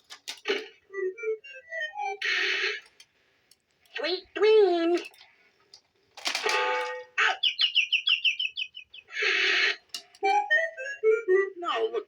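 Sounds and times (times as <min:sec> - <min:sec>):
high bird tweets: 0:07.3 - 0:09.2.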